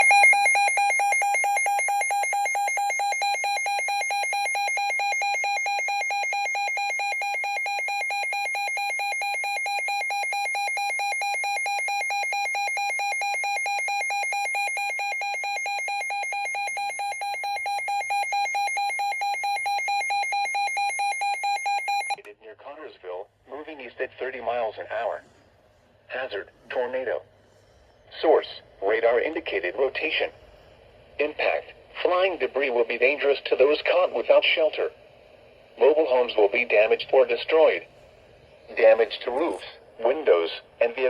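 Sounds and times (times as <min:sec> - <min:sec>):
pulsing high-pitched alarm tone: 0:00.0 - 0:22.2.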